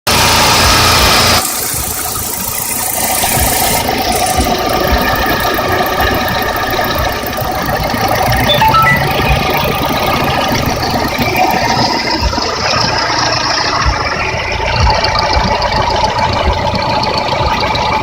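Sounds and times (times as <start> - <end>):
loud noisy burst: 0.1 - 16.8
car engine idling: 0.1 - 18.0.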